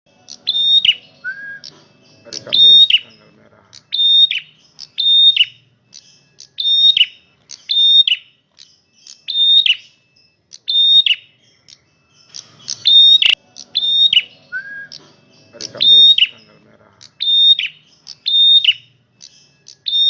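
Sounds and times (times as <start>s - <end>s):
bird singing whistled notes: 0.1s - 20.0s.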